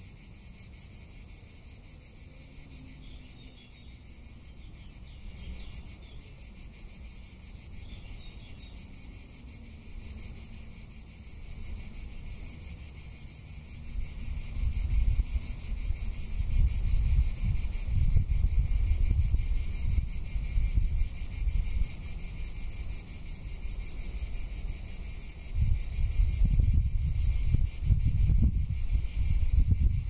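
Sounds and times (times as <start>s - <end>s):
cicadas buzzing: 0.0s - 30.0s
wind buffeting microphone: 13.9s - 22.9s, 24.2s - 30.0s.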